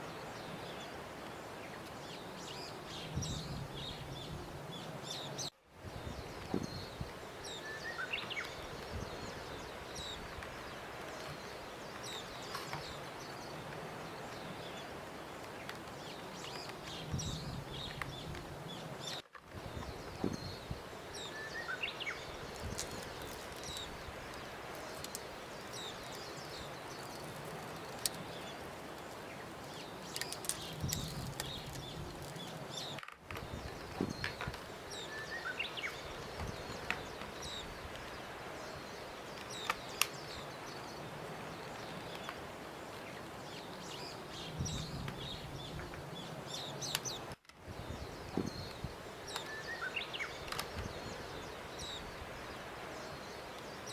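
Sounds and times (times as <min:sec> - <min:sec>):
small birds chirping: 0:15.5 - 0:42.4.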